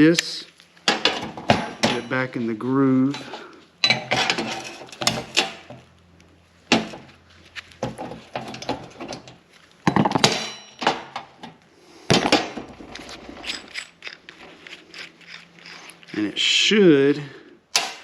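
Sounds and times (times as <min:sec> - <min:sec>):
steel tools clanking: 0:00.1 - 0:05.7, 0:10.2 - 0:11.3, 0:12.2 - 0:16.6.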